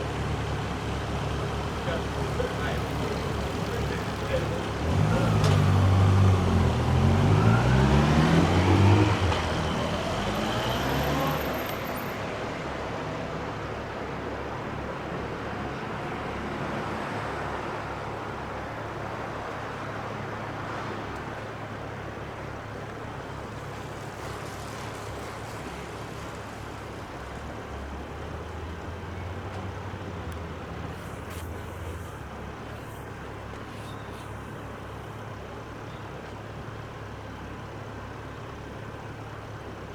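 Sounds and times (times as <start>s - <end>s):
road traffic: 0.0s - 39.9s
vehicle engine accelerating: 1.8s - 11.9s.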